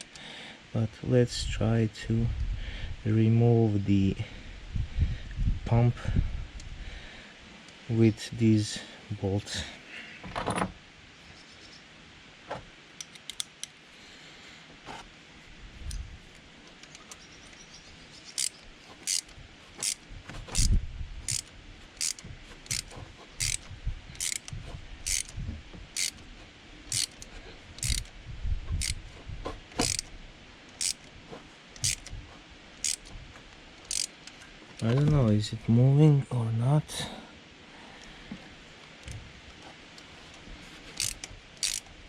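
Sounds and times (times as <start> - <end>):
ratchet wrench clicking: 18.4 - 25.4, 26.0 - 26.2, 26.9 - 28.1, 28.8 - 29.0, 29.8 - 30.1, 30.7 - 31.1, 31.8 - 32.1, 32.8 - 33.1, 33.8 - 34.4, 41.0 - 41.9.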